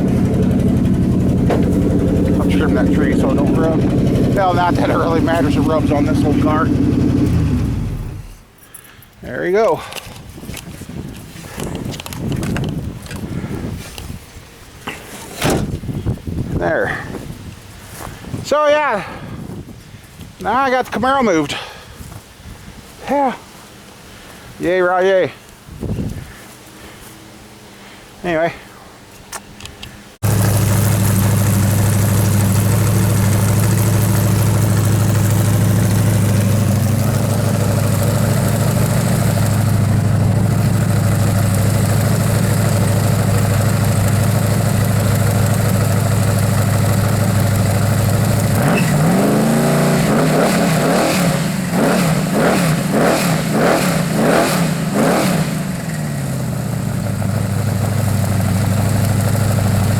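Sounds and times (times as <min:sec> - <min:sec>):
car engine idling and revving: 0:00.0 - 0:08.6, 0:30.2 - 0:59.9.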